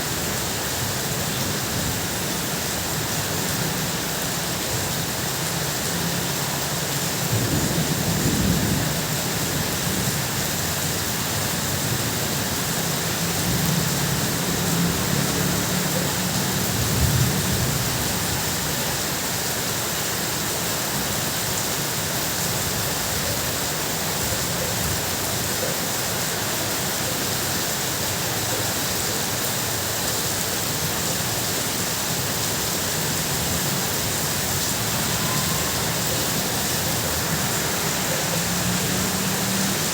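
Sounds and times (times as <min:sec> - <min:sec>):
heavy rain on a tin roof: 0:00.0 - 0:39.9
thunder rumbling: 0:07.2 - 0:10.8.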